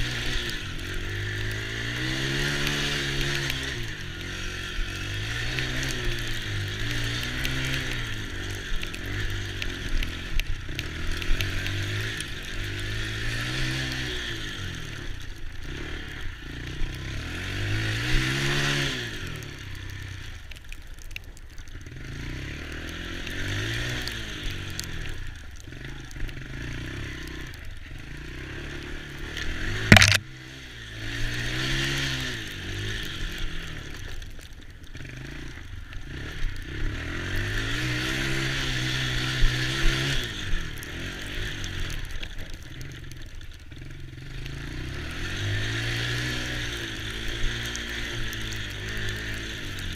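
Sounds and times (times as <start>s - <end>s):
small atv engines revving: 0.0s - 20.7s, 21.6s - 49.9s.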